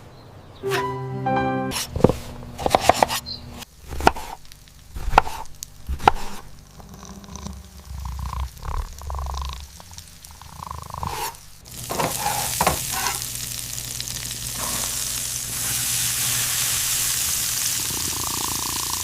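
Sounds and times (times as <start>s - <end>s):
knife chopping on cutting board: 2.0s - 3.2s, 3.9s - 4.4s, 5.0s - 6.4s.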